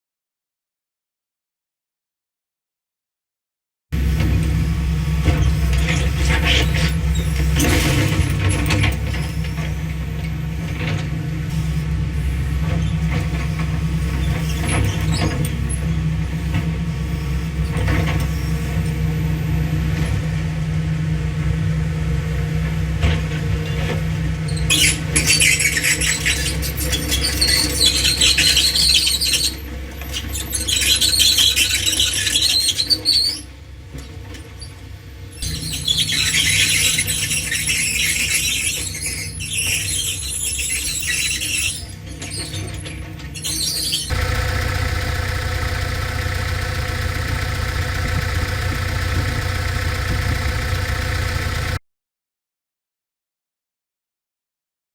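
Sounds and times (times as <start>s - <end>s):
excavator diesel engine running: 44.1s - 51.8s.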